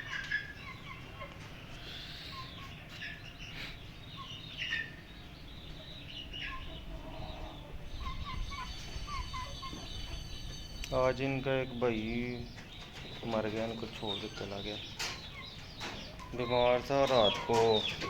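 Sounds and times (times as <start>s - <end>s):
birds chirping: 0.0s - 18.0s
wind rumble on microphone: 6.6s - 10.9s.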